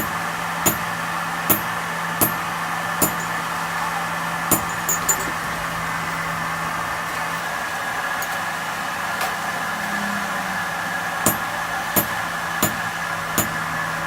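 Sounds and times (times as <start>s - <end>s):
sharp knocks: 0.0s - 0.9s, 1.5s - 3.4s, 4.5s - 5.3s, 11.3s - 13.6s
machine humming: 0.0s - 14.0s.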